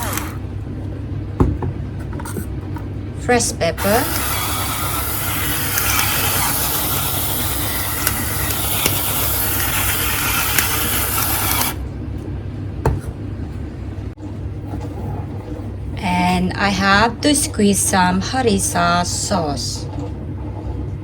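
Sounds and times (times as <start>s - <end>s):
steady low hum: 0.0s - 21.0s
pepper mill grinding: 3.8s - 11.8s.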